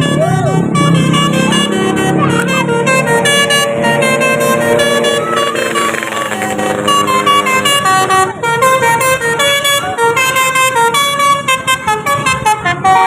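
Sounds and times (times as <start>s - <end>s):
musical bus horn playing a tune: 0.0s - 13.0s.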